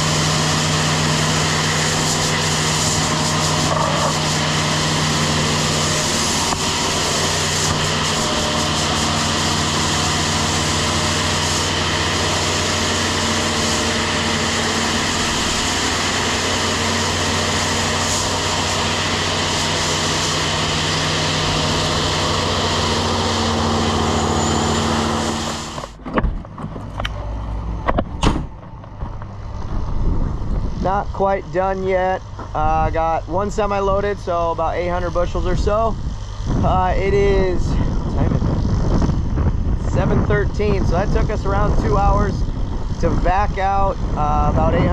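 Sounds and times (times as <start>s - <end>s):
grain vac running: 0.0s - 26.0s
wind noise: 27.9s - 44.9s.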